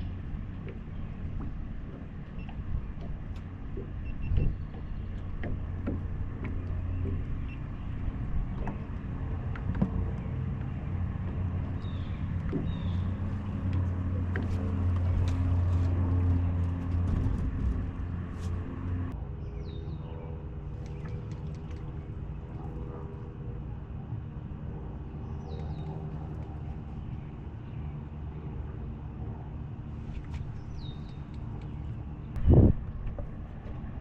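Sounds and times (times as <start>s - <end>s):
boat motor humming: 0.0s - 34.0s
light knocks and clicks: 0.5s - 19.1s.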